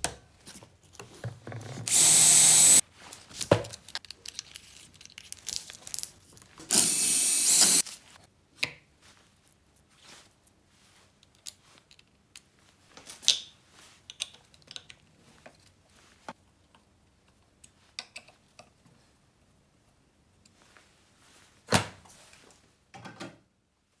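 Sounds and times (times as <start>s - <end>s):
cordless drill running: 1.9s - 2.8s, 6.7s - 7.8s
tools and parts clicking and knocking: 3.4s - 7.8s.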